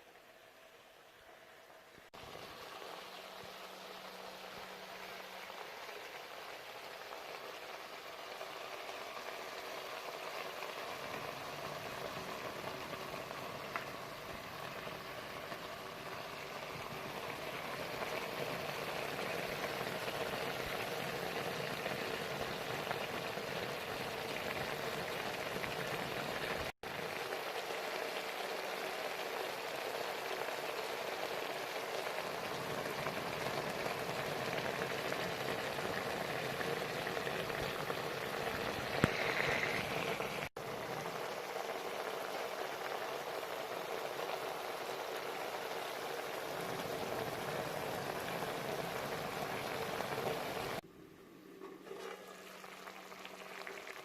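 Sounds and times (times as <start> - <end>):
gravy bubbling in a pan: 0.1 - 50.9, 51.5 - 54.0.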